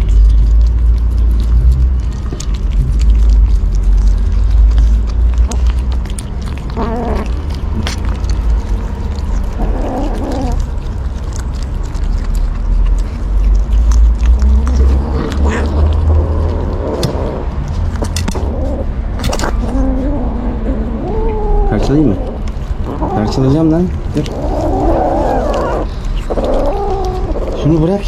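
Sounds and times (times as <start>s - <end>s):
kittens chewing: 0.0s - 28.0s
steady low rumble: 0.0s - 28.0s
kitten calling out: 14.6s - 16.2s, 18.4s - 23.5s, 24.2s - 27.8s.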